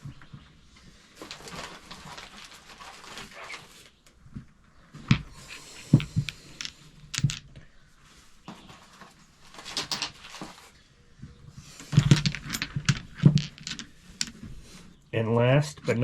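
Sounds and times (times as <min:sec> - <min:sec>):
rustling: 0:00.0 - 0:15.0
metal tools clinking: 0:01.2 - 0:01.6, 0:05.4 - 0:07.4, 0:09.6 - 0:10.4, 0:12.0 - 0:14.4.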